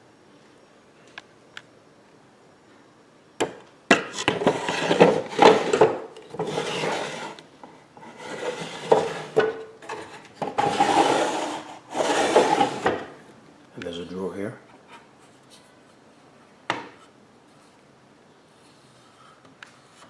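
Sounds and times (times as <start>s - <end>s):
wooden drawers sliding: 4.2s - 7.4s, 8.0s - 13.2s.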